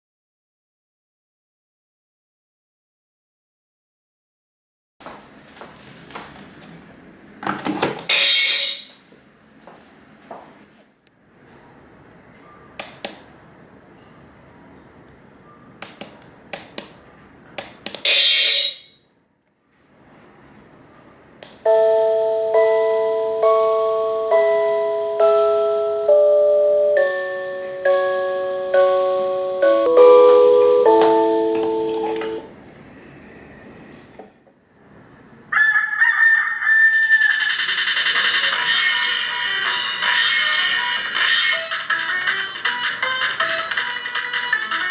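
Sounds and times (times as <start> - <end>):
bell-like chime melody: 21.7 - 32.5
electronic alarm clock beep: 21.7 - 32.5
rooster crowing: 35.5 - 37.4.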